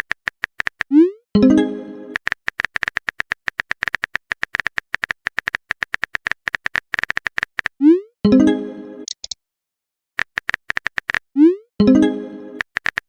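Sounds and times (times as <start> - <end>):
phone keyboard typing clicks: 0.0 - 1.0, 2.1 - 7.8, 9.0 - 9.4, 10.2 - 11.2, 12.6 - 13.0.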